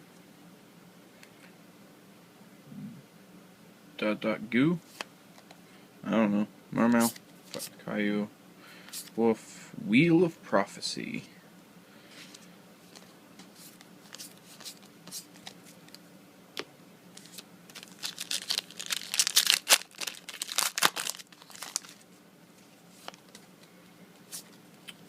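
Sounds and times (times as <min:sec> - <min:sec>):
foil wrapper crinkling and tearing: 0:17.2 - 0:22.0.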